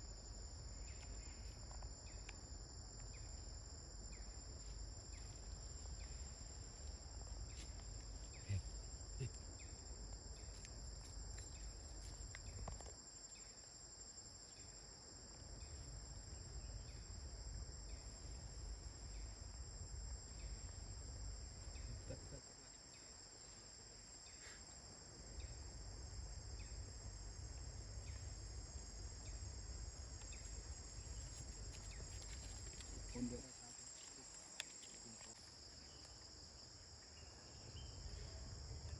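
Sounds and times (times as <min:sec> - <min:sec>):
insects chorus: 0:00.0 - 0:38.9.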